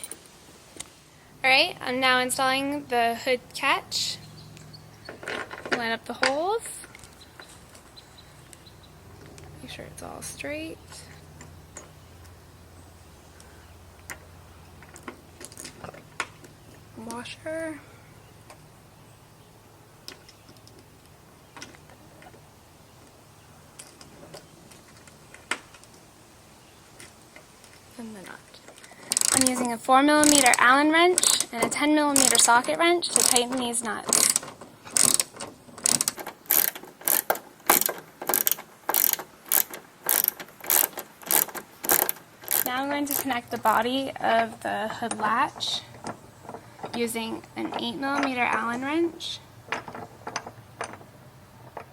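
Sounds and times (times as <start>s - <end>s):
low steady hum: 0.0s - 51.9s
ratchet wrench clicking: 29.1s - 29.6s, 30.2s - 31.5s, 32.1s - 43.3s.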